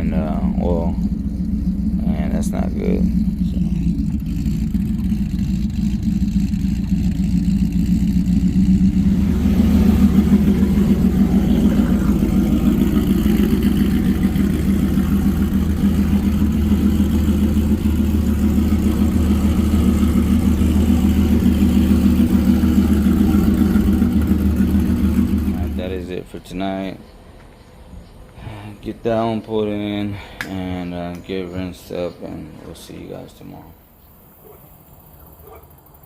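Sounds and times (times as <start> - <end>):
truck engine idling: 0.0 - 28.3.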